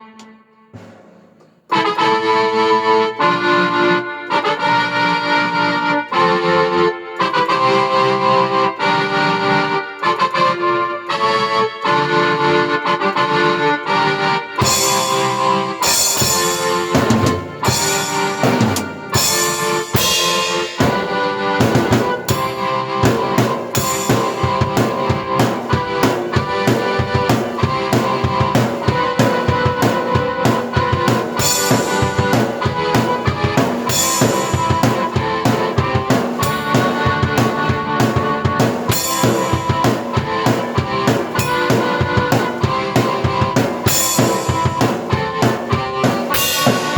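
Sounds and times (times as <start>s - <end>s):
keyboard chords: 0.0s - 46.9s
drum kit beat: 0.8s - 2.0s, 14.6s - 46.9s.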